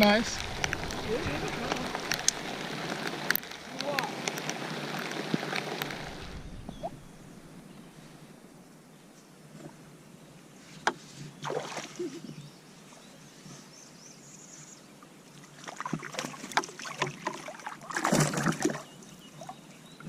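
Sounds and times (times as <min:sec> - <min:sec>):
water splashing around kayak: 0:00.0 - 0:08.4, 0:15.2 - 0:20.0.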